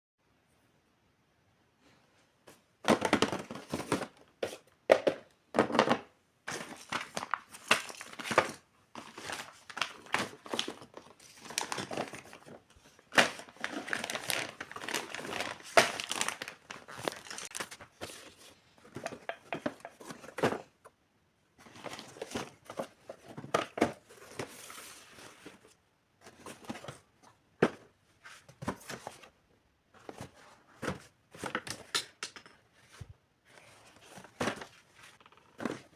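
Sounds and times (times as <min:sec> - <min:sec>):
packaging crinkling and tearing: 0:06.6 - 0:18.0.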